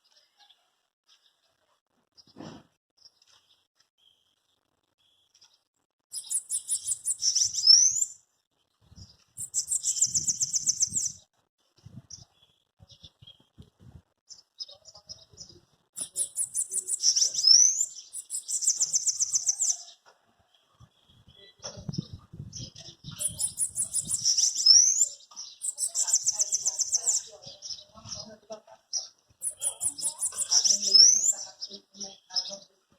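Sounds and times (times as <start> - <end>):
bird song buzzy trills: 6.1 - 8.2, 9.0 - 11.2, 14.3 - 19.8, 21.0 - 28.3, 29.0 - 32.7.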